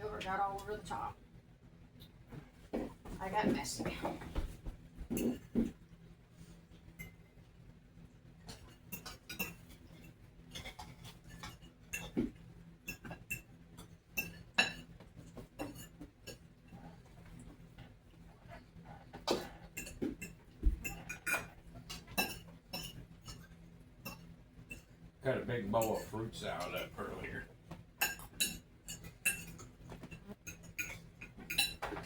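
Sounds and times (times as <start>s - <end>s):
faint low hum: 0.0s - 32.0s
cutlery clinking on plates: 8.5s - 16.4s, 19.3s - 24.9s, 25.8s - 26.8s, 28.0s - 32.0s.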